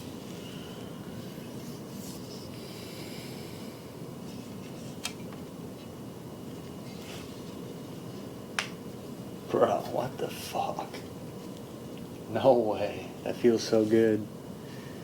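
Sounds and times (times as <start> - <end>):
rubbing and rustling handling noise: 0.0 - 2.6, 4.2 - 12.8.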